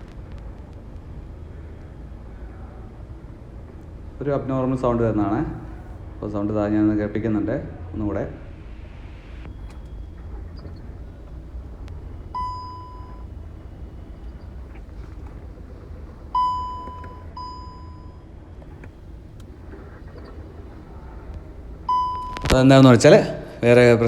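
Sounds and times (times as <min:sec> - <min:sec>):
car engine running: 0:04.8 - 0:06.2, 0:08.3 - 0:18.0, 0:18.6 - 0:24.0
short beeps: 0:08.6 - 0:18.2, 0:19.8 - 0:22.7.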